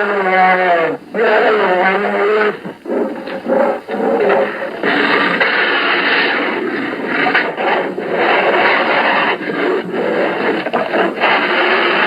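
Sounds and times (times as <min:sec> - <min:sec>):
bear growling roars: 0:00.0 - 0:06.4.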